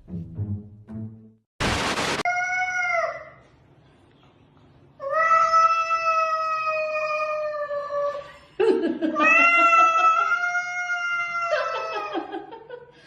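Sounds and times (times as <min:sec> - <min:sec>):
short hiss-like noise: 0:01.6 - 0:02.2.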